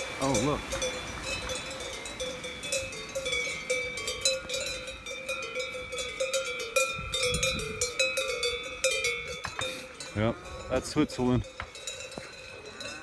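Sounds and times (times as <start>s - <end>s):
cowbells clanking: 0.0s - 13.0s.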